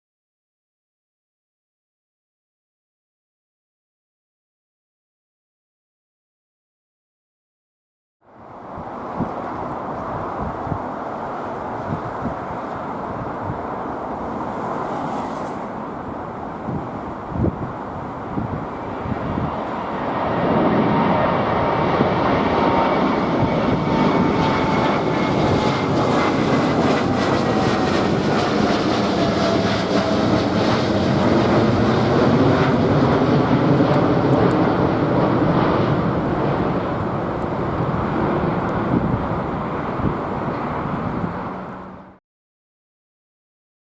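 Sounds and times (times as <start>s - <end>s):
jet engines at takeoff: 8.3s - 42.2s.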